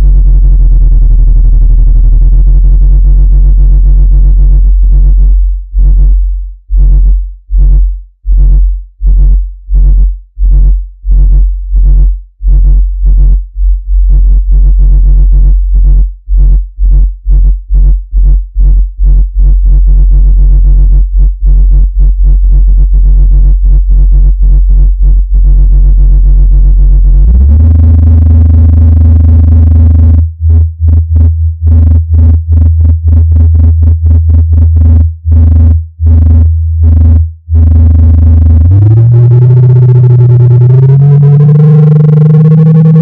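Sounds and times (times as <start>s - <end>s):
deep pulsing speaker tone: 0.0s - 43.0s
steady tone: 26.9s - 43.0s.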